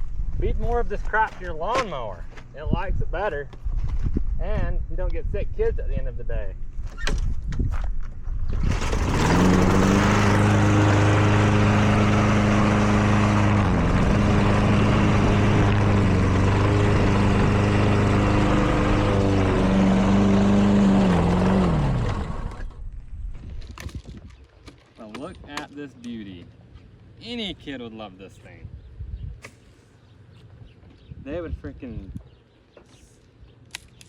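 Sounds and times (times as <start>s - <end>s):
lawn mower engine running: 8.6s - 22.8s
mower blade shredding: 8.6s - 22.8s.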